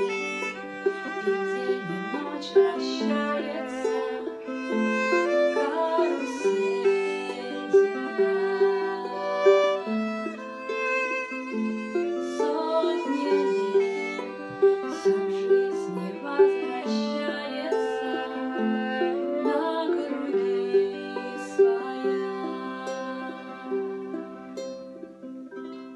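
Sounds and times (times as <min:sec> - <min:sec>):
ukulele accompaniment: 0:00.0 - 0:25.9
violin melody: 0:00.0 - 0:25.9.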